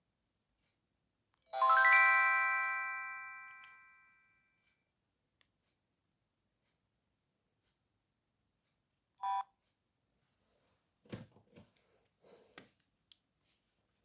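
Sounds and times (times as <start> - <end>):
phone two-tone beep: 9.2 - 9.5.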